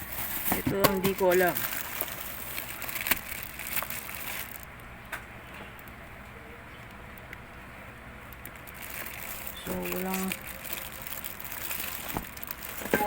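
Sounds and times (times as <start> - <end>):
packaging clicks and rustles: 0.0 - 4.8, 8.3 - 13.0
low background hum: 0.0 - 13.0.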